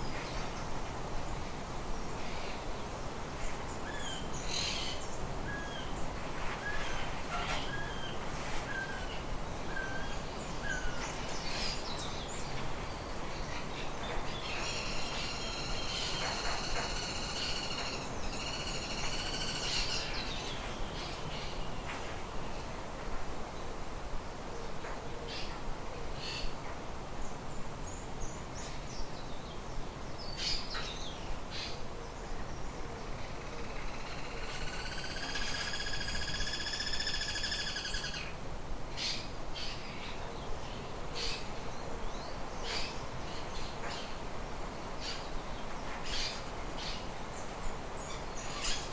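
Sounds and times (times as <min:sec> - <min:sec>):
birds twittering: 0:00.0 - 0:22.7, 0:27.8 - 0:48.9
small birds chirping: 0:00.0 - 0:22.7
steady background hiss: 0:00.0 - 0:48.9.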